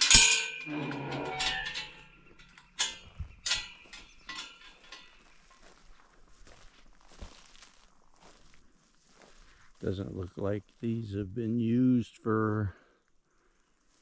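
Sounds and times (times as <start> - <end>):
chain clanking on metal gate: 0.0 - 5.8.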